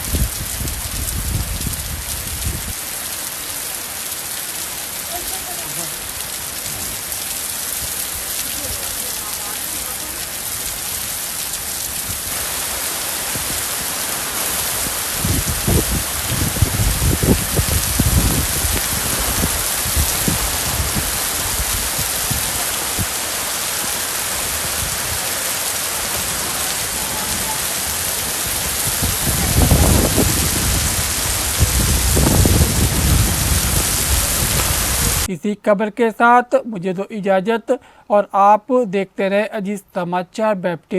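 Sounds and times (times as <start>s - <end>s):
heavy rain falling: 0.0s - 35.3s
low rumbling: 27.5s - 35.3s.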